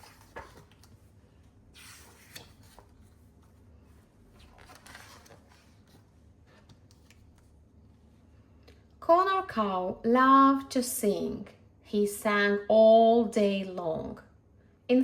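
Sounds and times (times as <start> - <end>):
pages rustling and turning: 0.0 - 7.6
low room hum: 0.0 - 15.0.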